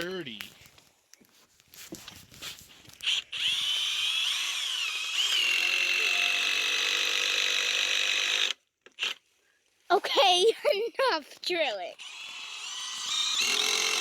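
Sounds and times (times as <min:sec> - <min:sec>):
power drill whining: 0:03.0 - 0:09.2, 0:11.9 - 0:14.0.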